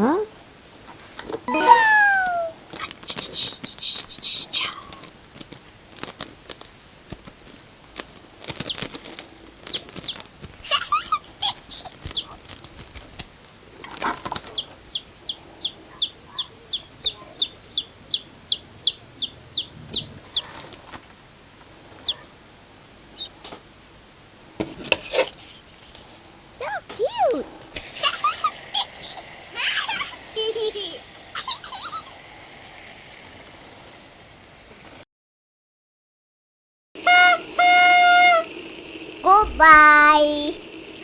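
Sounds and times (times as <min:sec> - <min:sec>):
high chirps sliding down in pitch: 0:01.5 - 0:02.6.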